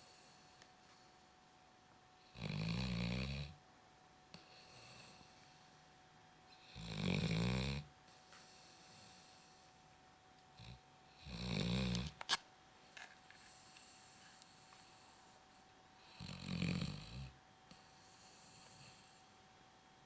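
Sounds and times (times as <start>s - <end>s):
dog snoring: 2.2s - 3.6s, 4.4s - 5.3s, 6.5s - 7.9s, 10.6s - 12.2s, 16.0s - 19.3s.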